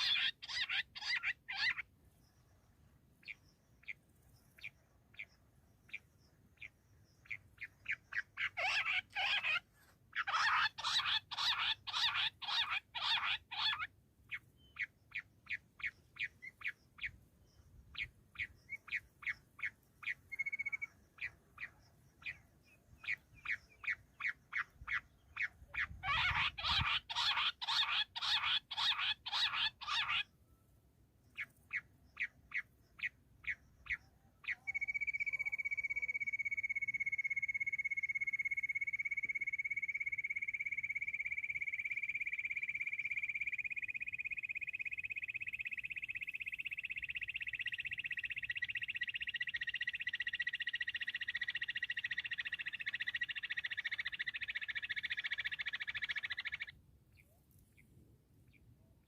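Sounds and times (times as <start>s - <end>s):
quail calling sharp notes: 0.0s - 1.8s, 7.9s - 15.6s, 23.0s - 30.3s, 31.7s - 56.7s.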